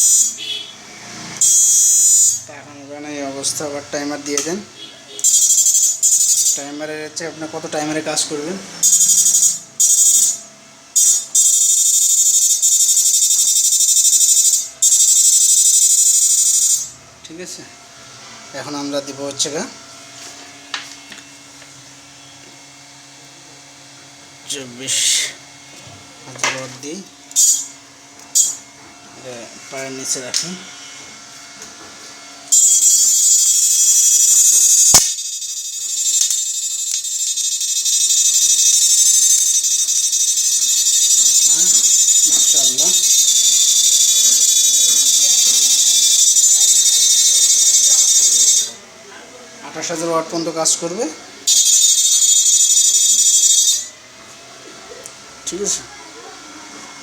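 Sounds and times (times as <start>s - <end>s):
high-pitched electric buzz: 0.0s - 17.5s, 24.4s - 48.8s, 49.6s - 54.3s.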